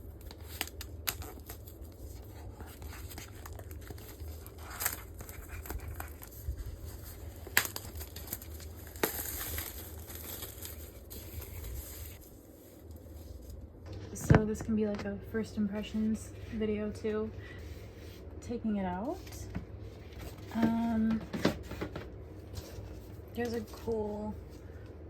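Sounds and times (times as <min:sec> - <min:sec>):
plastic wrap tearing and crinkling: 0:00.0 - 0:13.6.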